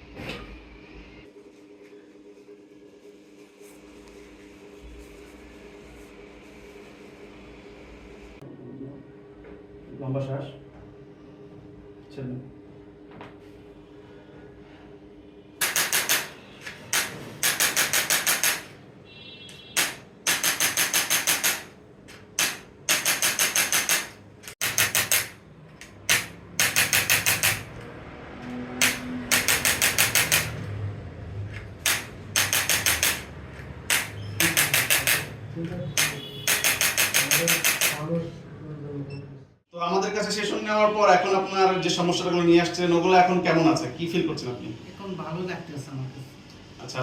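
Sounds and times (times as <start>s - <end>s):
chiropractic instrument rapid clicks: 15.6s - 18.7s, 19.8s - 21.7s, 22.4s - 27.7s, 28.8s - 30.6s, 31.8s - 35.4s, 36.0s - 38.0s.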